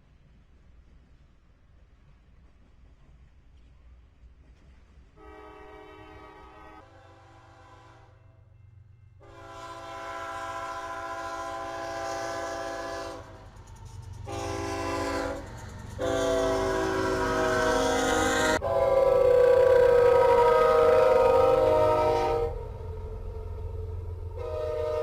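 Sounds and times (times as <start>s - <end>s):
locomotive air horn blasts: 5.2s - 8.4s, 9.2s - 13.5s, 14.2s - 22.7s, 24.3s - 25.0s
low engine rumble: 10.2s - 25.0s.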